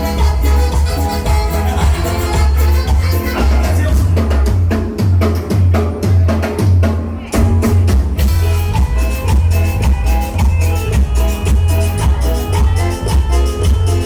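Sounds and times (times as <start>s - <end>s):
latin dance music: 0.0s - 14.0s.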